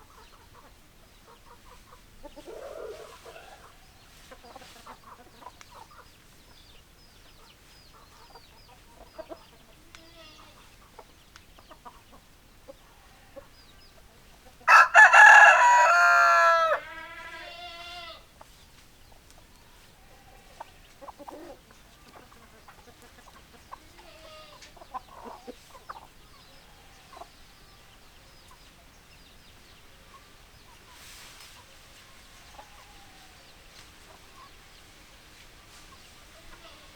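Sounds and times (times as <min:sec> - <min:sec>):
hens clucking: 0:00.0 - 0:34.8
rooster crowing: 0:14.7 - 0:17.5.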